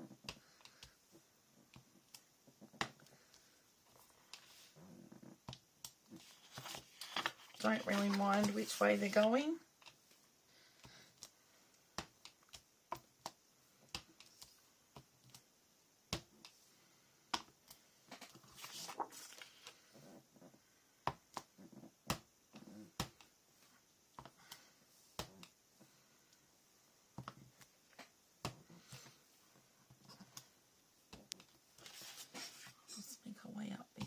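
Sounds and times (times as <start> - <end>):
paper rustling: 6.2 - 9.3, 18.4 - 19.8, 31.8 - 32.8.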